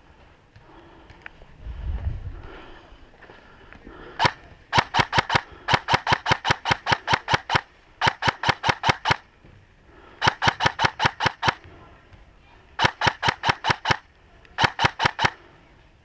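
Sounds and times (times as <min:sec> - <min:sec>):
airsoft rifle shots: 0:04.1 - 0:09.3, 0:10.2 - 0:11.6, 0:12.8 - 0:15.5.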